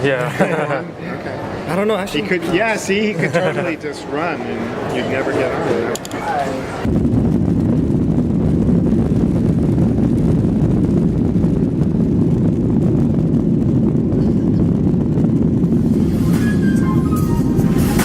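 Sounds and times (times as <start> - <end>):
airliner cabin engine rumble: 2.3 - 18.0
music: 15.9 - 18.0.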